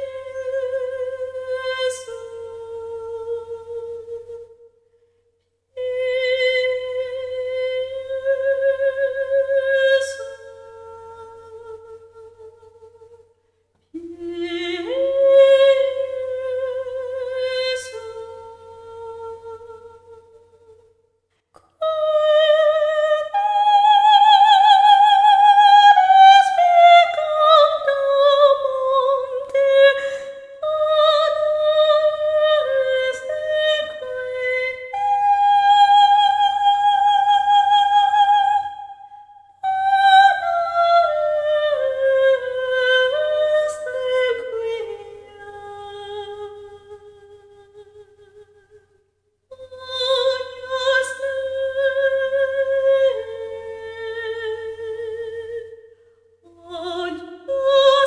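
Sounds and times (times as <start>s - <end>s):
person singing with vibrato: 21.6s - 58.0s.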